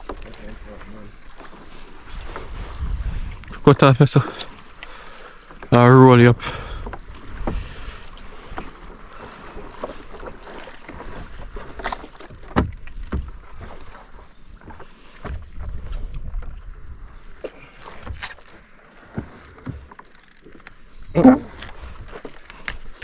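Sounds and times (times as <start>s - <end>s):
knocks and thumps aboard boat: 0.0s - 23.0s
low rumble of water: 0.0s - 23.0s
wind on microphone: 2.0s - 3.8s, 15.3s - 17.4s, 21.0s - 22.8s.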